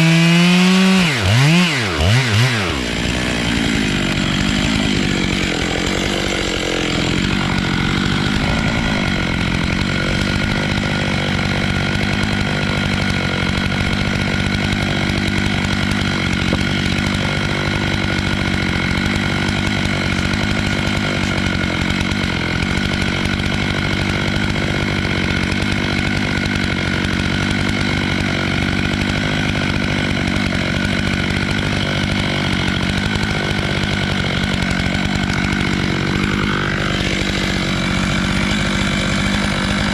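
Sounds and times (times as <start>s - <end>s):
chainsaw cutting wood at high revs: 0.0s - 39.9s.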